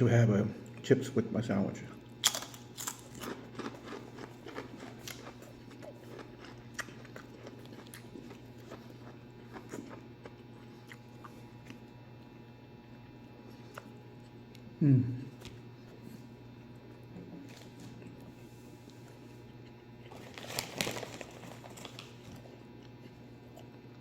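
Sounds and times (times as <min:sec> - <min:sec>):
chewing crunchy chips: 0:01.9 - 0:14.7, 0:15.3 - 0:24.0.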